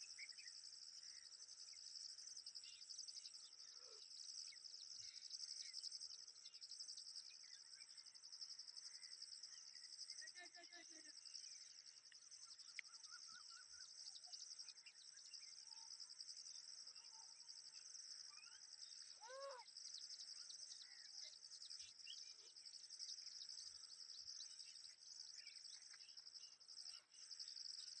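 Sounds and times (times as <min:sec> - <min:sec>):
bird chirps: 0:00.0 - 0:28.0
insects chorus: 0:00.0 - 0:28.0.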